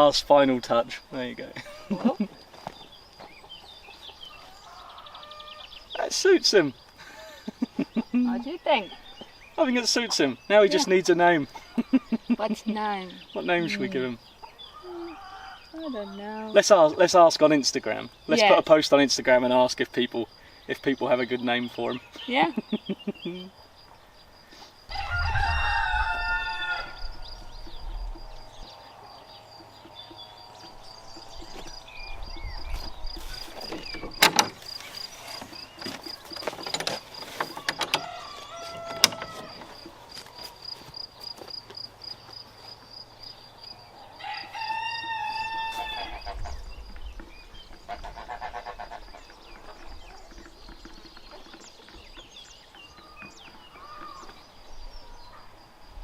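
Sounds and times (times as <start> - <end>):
high insect trill: 0.0 - 56.0
rooster crowing: 4.3 - 5.8, 14.7 - 16.2, 24.9 - 28.3, 37.8 - 39.8, 44.0 - 46.5.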